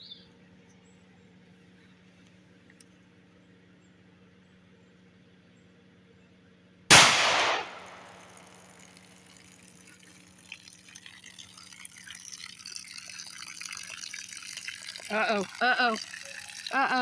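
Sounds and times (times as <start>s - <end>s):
pistol shot: 6.9s - 8.8s
water bursting out: 6.9s - 17.0s
water trickling and dripping: 6.9s - 17.0s.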